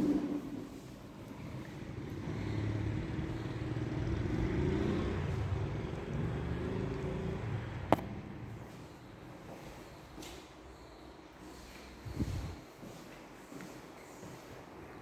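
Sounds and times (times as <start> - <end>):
vehicle engine passing: 1.4 - 8.8.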